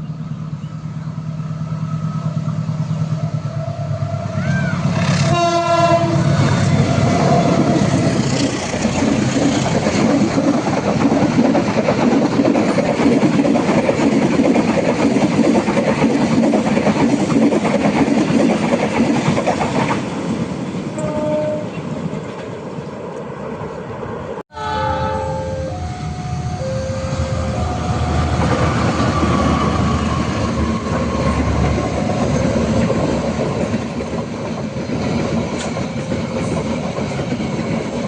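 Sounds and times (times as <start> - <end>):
train horn: 3.4 - 6.4, 20.9 - 21.8, 24.5 - 28.8
train wheels clattering on rails: 4.9 - 21.1, 28.3 - 38.0.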